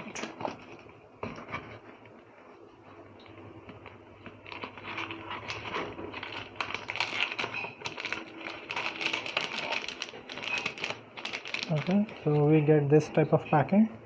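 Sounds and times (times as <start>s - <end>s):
packaging crackling and rustling: 3.7s - 12.7s.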